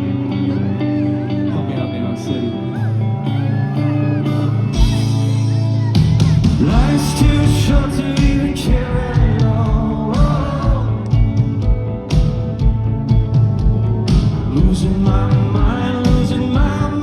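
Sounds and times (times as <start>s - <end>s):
rock band playing live: 0.0s - 17.0s
person singing: 0.1s - 11.4s, 14.5s - 17.0s.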